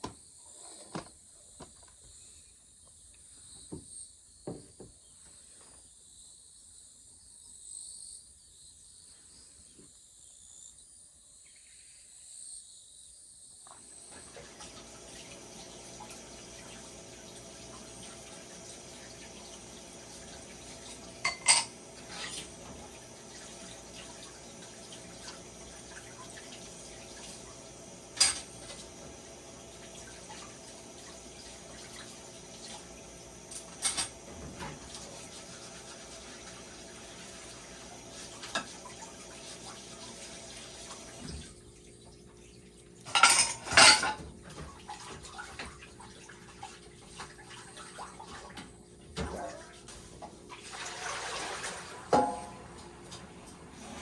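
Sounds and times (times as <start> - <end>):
tap water running: 13.7 - 54.0
dishes clattering: 20.8 - 22.9, 28.1 - 29.2, 33.5 - 34.9, 38.4 - 39.0, 43.1 - 44.8, 52.1 - 52.6
dishes and cutlery clinking: 20.9 - 22.6, 28.2 - 28.9, 33.5 - 34.8, 43.1 - 44.3, 52.2 - 52.6.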